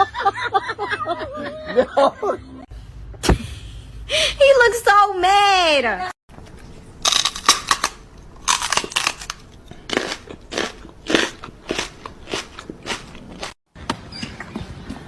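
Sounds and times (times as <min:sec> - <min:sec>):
loud crunching chewing: 0:06.4 - 0:13.6.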